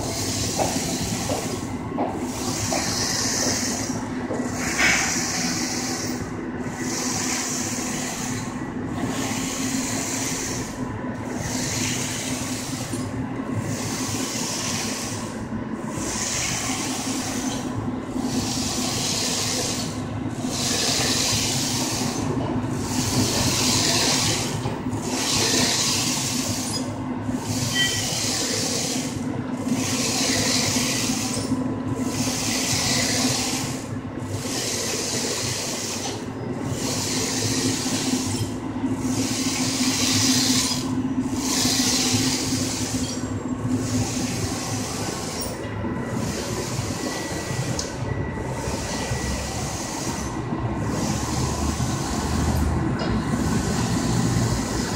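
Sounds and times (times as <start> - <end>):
printer hissing: 0.0 - 54.9.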